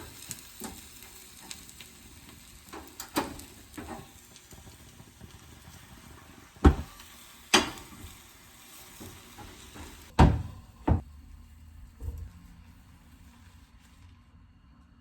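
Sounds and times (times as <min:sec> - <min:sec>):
kitchen knocks and thuds: 0:06.6 - 0:06.9, 0:10.2 - 0:11.0.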